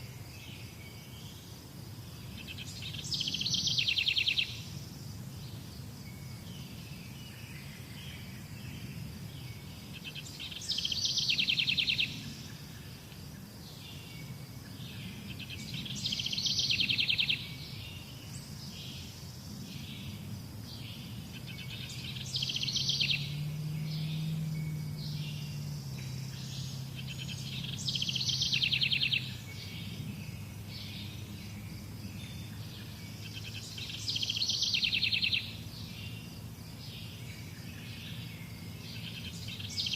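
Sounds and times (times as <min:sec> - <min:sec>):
faint bird chirps: 0:02.2 - 0:04.8, 0:05.4 - 0:39.9
songbird trilling: 0:02.4 - 0:04.7, 0:10.0 - 0:12.3, 0:15.3 - 0:17.8, 0:20.9 - 0:36.2.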